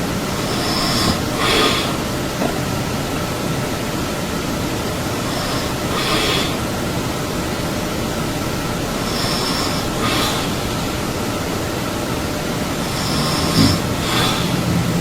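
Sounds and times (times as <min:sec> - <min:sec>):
person snoring loudly: 0:00.3 - 0:02.1, 0:05.2 - 0:06.7, 0:09.0 - 0:11.0, 0:12.7 - 0:15.0.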